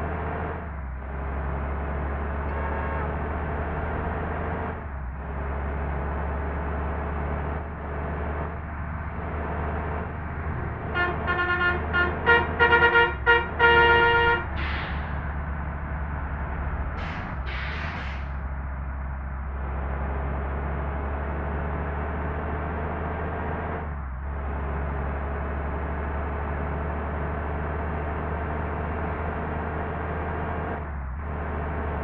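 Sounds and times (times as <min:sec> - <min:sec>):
musical air horn notes: 0:11.0 - 0:14.5.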